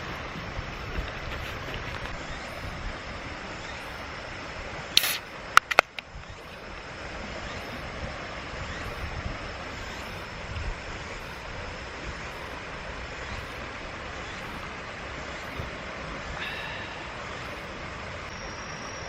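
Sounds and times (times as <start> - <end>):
mountain stream rushing: 0.0 - 19.0
short hiss: 5.0 - 5.3
sharp clicks: 5.0 - 6.1.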